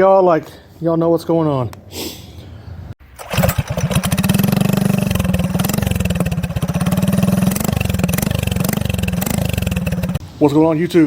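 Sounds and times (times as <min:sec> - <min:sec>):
motorcycle engine running: 0:03.2 - 0:10.2.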